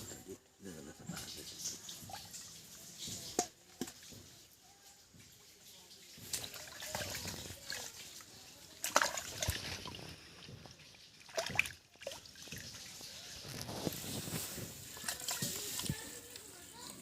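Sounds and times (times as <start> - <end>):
water sloshing and trickling: 0.7 - 17.0
water splashes: 5.2 - 16.8.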